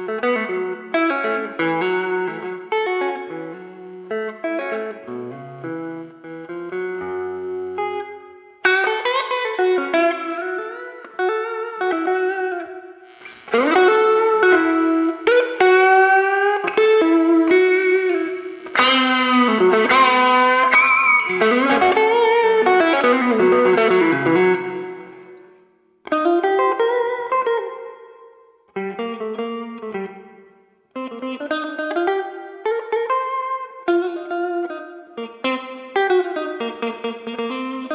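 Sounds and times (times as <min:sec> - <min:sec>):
electric guitar blues licks: 0:00.0 - 0:37.9.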